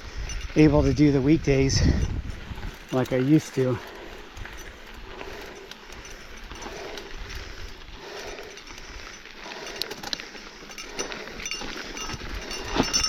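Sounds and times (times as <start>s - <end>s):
bike clicks and rattles: 0.0s - 13.0s
bike tyres crunching on gravel: 0.0s - 13.0s
heavy breathing: 3.6s - 13.0s.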